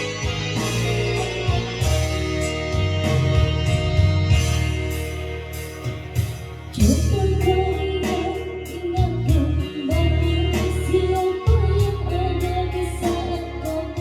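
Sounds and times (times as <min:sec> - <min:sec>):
bass guitar and drums backing: 0:00.0 - 0:14.0
woman singing: 0:06.8 - 0:14.0.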